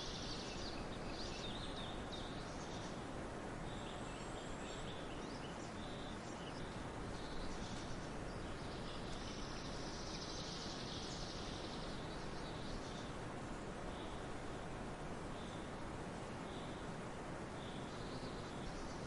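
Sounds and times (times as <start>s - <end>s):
birds chirping: 0.0s - 14.5s
outdoor background hiss: 0.0s - 19.0s.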